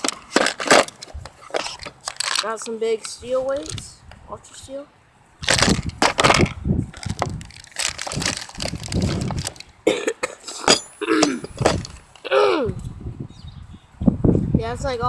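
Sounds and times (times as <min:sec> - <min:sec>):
tackle box knocks and rattles: 0:05.5 - 0:07.4, 0:11.5 - 0:12.0.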